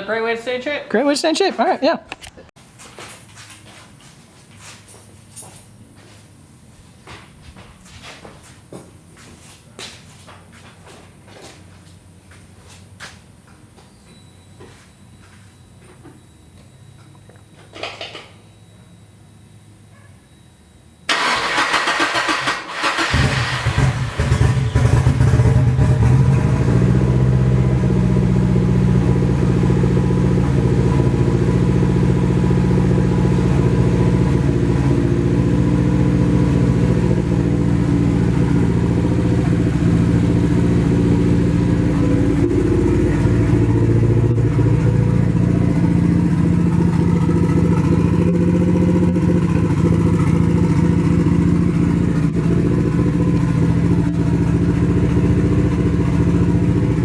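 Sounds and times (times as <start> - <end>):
car engine idling: 21.1 - 57.0.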